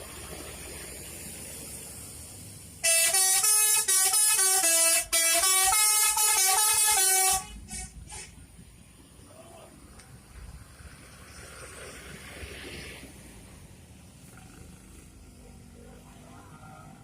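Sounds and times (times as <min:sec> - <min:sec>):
low engine rumble: 0:00.0 - 0:17.0
bus musical air horn: 0:02.8 - 0:08.4.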